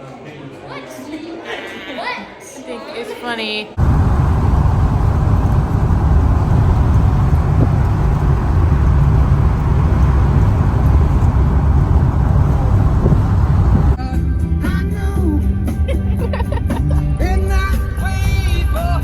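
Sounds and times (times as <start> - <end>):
vehicle rumbling: 3.8 - 14.0.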